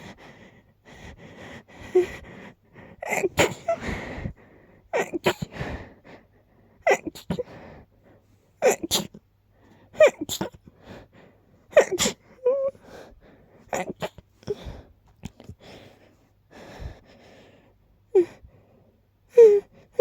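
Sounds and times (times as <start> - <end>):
gasping breaths: 0.0 - 8.3, 10.6 - 19.0
person sneezing: 3.0 - 4.0, 5.0 - 5.6, 6.8 - 7.5, 8.6 - 9.2, 10.0 - 10.6, 11.7 - 12.2, 13.7 - 14.2.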